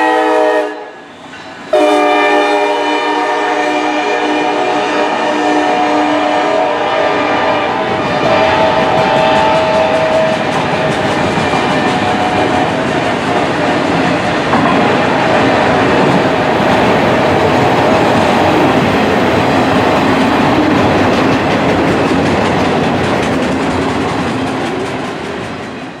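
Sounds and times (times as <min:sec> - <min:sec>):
train rumble: 0:00.0 - 0:26.0
wheels clacking over rail joints: 0:07.8 - 0:26.0.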